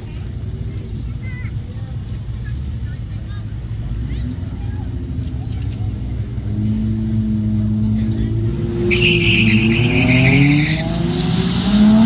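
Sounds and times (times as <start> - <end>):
car engine revving: 0.0 - 12.0
high-pitched squeal: 8.6 - 12.0.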